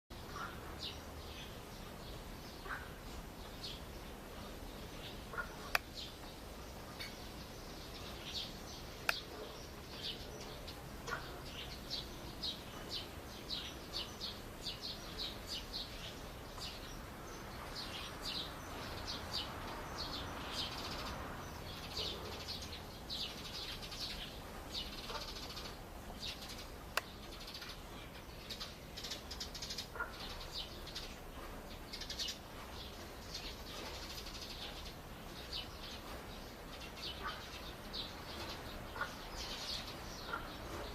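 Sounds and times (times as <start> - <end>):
small birds chirping: 0.1 - 40.9
soft rush of noise: 0.1 - 40.9.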